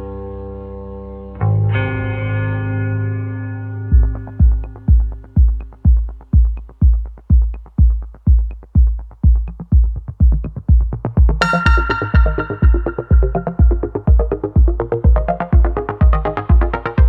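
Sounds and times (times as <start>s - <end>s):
electronic music: 3.8s - 17.0s
deep kick drum beat: 3.9s - 17.0s
bright synth: 11.4s - 17.0s.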